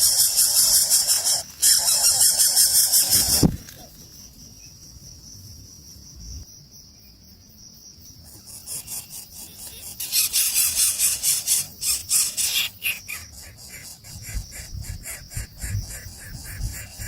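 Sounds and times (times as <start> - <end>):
nestling birds begging calls: 0.0 - 4.0, 8.5 - 17.0
high insect trill: 0.0 - 17.0.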